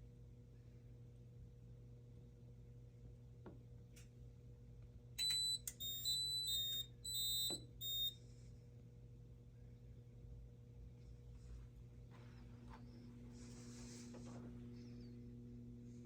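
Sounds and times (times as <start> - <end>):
low electrical hum: 0.0 - 16.0
short high-pitched beeps: 5.2 - 8.2.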